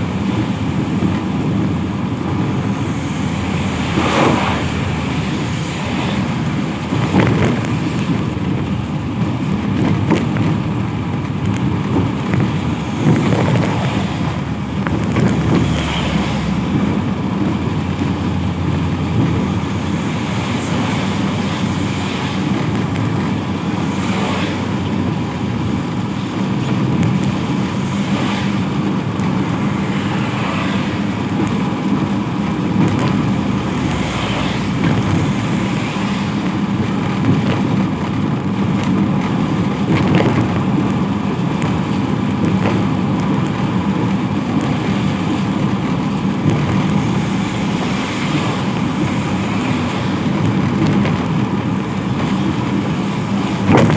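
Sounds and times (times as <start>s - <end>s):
rain: 0.0s - 53.9s
traffic on a wet road: 0.0s - 53.9s.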